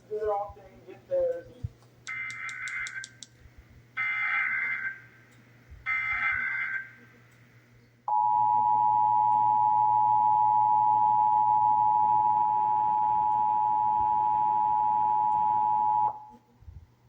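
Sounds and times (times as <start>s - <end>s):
faint broadcast hiss and hum: 0.0s - 17.0s.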